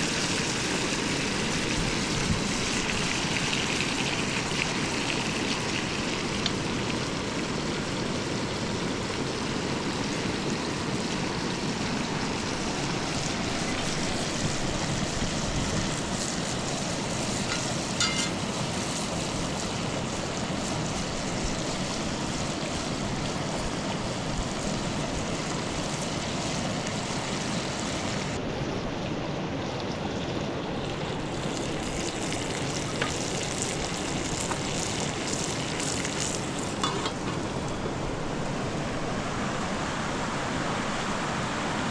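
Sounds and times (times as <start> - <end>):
river water rushing: 36.4 - 41.9.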